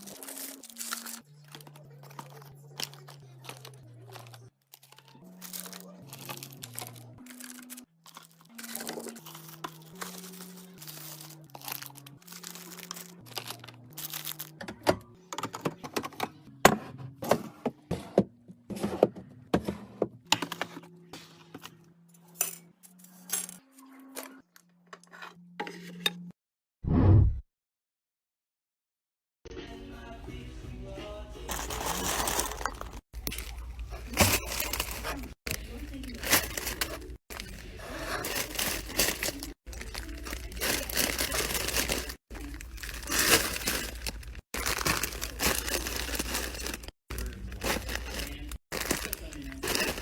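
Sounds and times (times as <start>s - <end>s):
packaging rustling: 0.0s - 14.5s, 31.5s - 50.0s
items clicking and clinking: 0.0s - 17.7s, 31.5s - 50.0s
soft background music: 0.3s - 19.4s, 29.5s - 46.4s.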